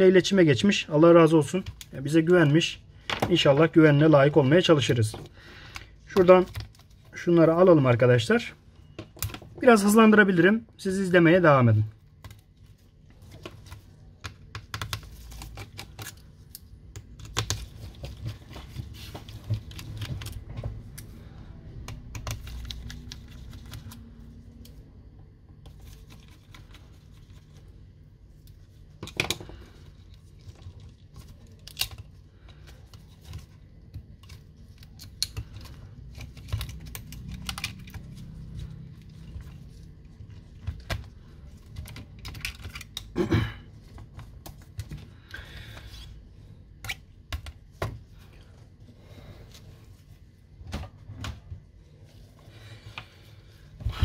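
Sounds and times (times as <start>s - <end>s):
clicks of small laptop parts: 34.0s - 38.2s.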